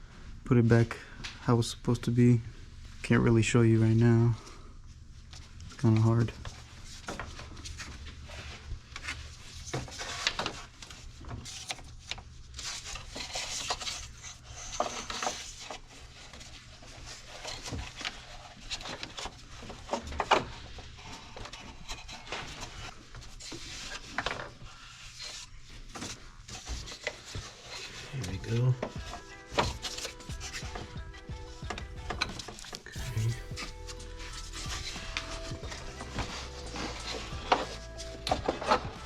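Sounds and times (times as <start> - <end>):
steady low hum: 33.0 - 39.0.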